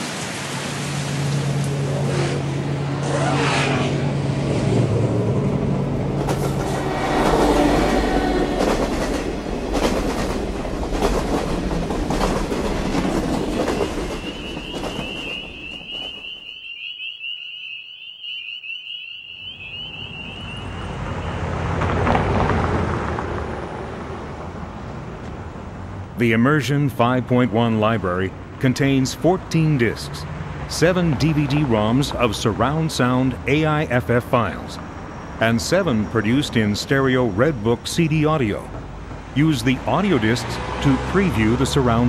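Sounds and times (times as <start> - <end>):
high wavering chirp: 13.7 - 21.6.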